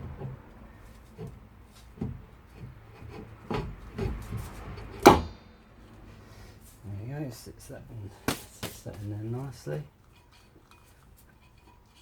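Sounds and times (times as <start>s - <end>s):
loud metallic clank with ring: 5.1s - 5.8s.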